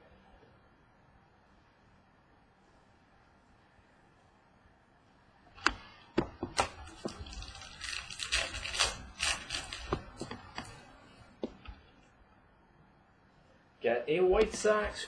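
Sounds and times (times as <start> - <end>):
cards clicking and tapping: 5.6 - 10.8
cards rustling: 6.4 - 11.8.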